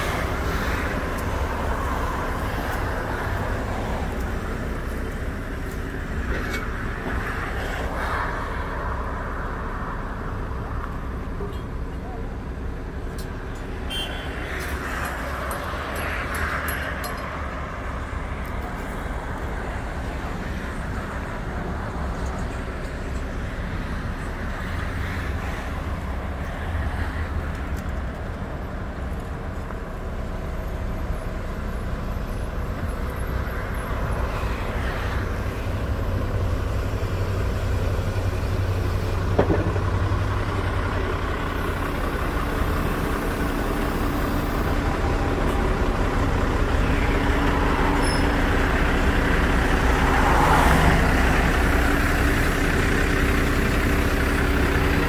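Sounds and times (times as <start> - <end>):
diesel truck engine running: 17.4 - 55.0.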